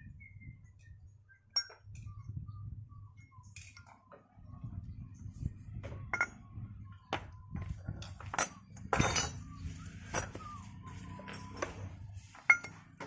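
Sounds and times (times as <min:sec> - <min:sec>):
faint whistled tune: 0:00.0 - 0:07.9, 0:08.6 - 0:12.7
metal parts clinking: 0:08.0 - 0:09.5, 0:10.1 - 0:10.4, 0:11.0 - 0:11.9, 0:12.5 - 0:12.8.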